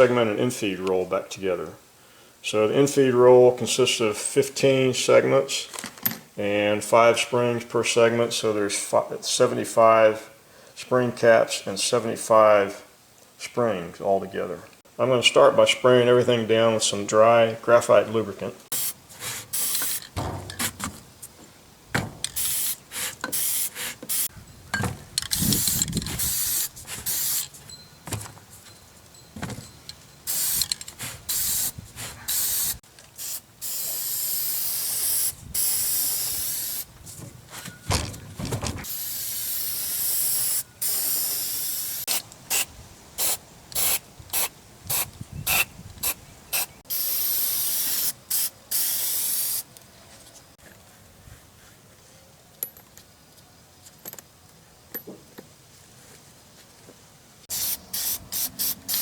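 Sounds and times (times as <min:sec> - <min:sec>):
aerosol can spraying: 0:18.7 - 0:20.8, 0:22.2 - 0:24.3, 0:25.5 - 0:27.5, 0:30.3 - 0:36.9, 0:38.8 - 0:49.6, 0:57.5 - 0:59.0
metal parts knocking and rattling: 0:19.8 - 0:21.1, 0:21.9 - 0:22.4, 0:29.4 - 0:31.0, 0:37.6 - 0:38.9.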